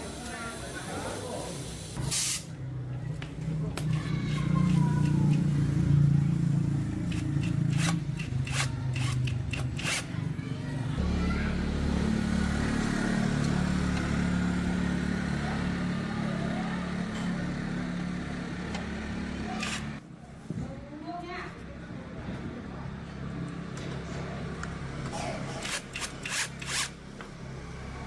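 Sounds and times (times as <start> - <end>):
small electric motor running: 3.9 - 5.8, 7.0 - 10.1, 19.0 - 20.0, 25.6 - 27.0
sharp clicks and scraping: 6.9 - 10.1, 19.5 - 20.0, 25.6 - 27.0.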